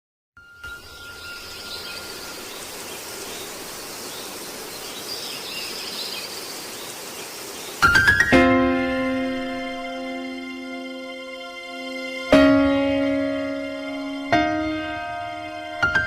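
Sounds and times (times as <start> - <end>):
steady background hiss: 0.6 - 15.8
struck notes and ringing chord: 8.3 - 16.0.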